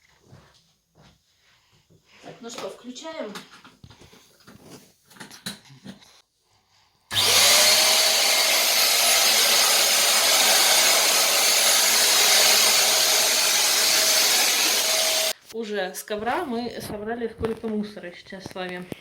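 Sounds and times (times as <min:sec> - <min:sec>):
vacuum cleaner whine: 0:07.1 - 0:15.4.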